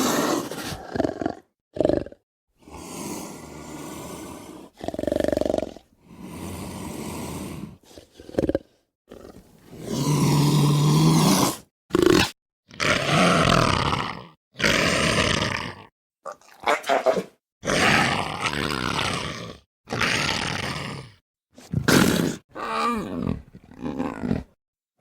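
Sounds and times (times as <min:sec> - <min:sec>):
lion snarling: 0:00.0 - 0:24.6
lion roaring and growling: 0:16.7 - 0:21.1, 0:21.7 - 0:24.6.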